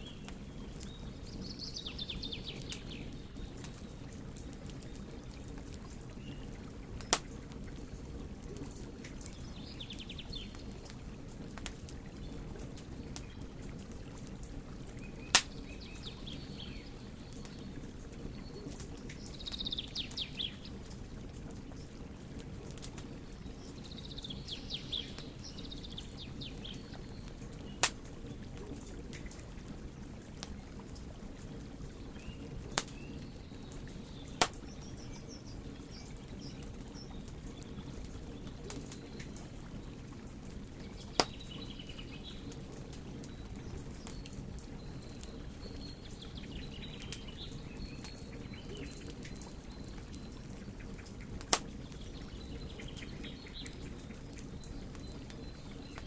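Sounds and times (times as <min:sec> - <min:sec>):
birds chirping faintly: 0:00.0 - 0:56.0
wood fire crackling: 0:00.0 - 0:56.0
fire popping sharply: 0:34.4 - 0:34.8.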